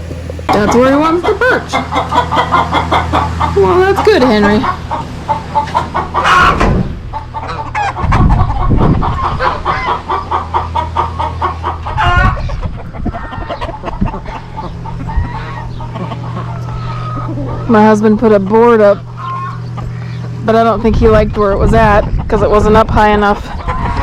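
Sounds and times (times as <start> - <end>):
chickens clucking: 0.0 - 24.0
wind rumbling on microphone: 6.5 - 10.1, 11.7 - 16.0, 19.0 - 24.0.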